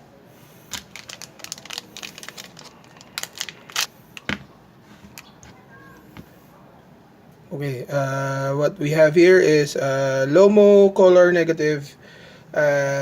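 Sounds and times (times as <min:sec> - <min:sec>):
film packaging clicks and crinkles: 0:00.7 - 0:04.5.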